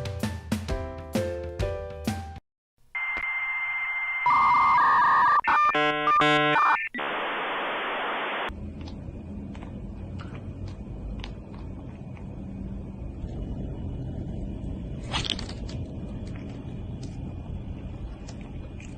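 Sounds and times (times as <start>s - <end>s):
music: 0.0s - 2.4s
electronic tones and warbling beeps: 4.3s - 7.4s.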